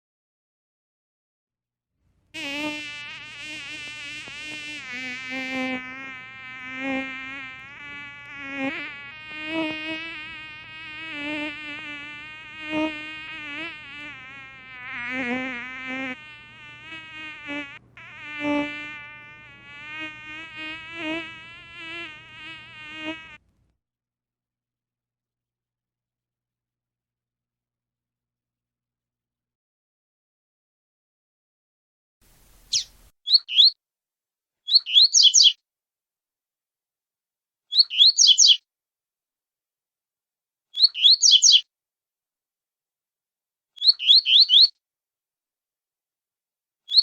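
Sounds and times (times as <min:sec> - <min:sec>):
mosquito whining: 0:02.4 - 0:23.4.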